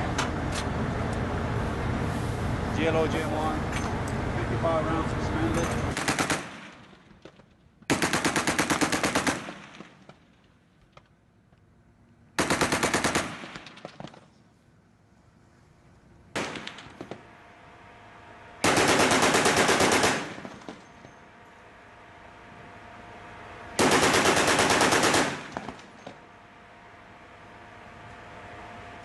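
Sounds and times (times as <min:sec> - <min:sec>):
machine gun firing bursts: 0:05.9 - 0:06.9, 0:07.9 - 0:10.2, 0:12.4 - 0:14.1, 0:18.6 - 0:20.9, 0:23.8 - 0:25.9.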